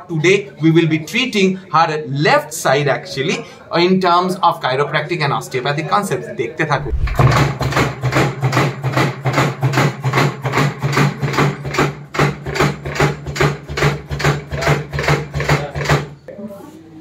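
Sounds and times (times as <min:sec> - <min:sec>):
steady low hum: 0:06.8 - 0:07.5.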